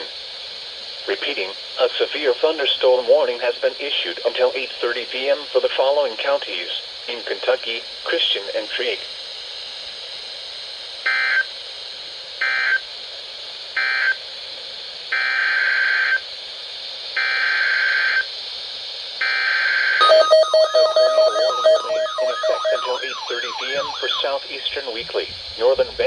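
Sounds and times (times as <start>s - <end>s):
steady alert tone: 20.0s - 26.0s.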